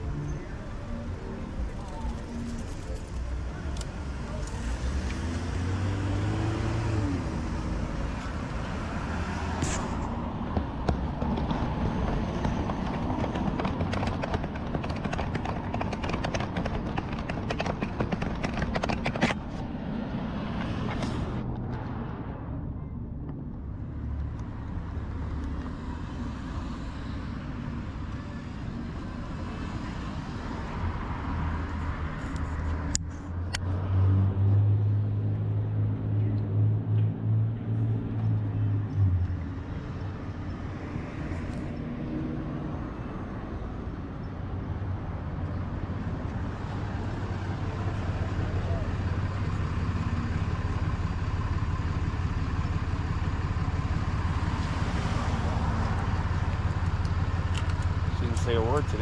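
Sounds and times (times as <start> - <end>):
bicycle road noise: 0.0 - 59.0
cars passing: 0.0 - 59.0
wind: 0.0 - 59.0
rapid clicking and rattling: 12.4 - 19.4.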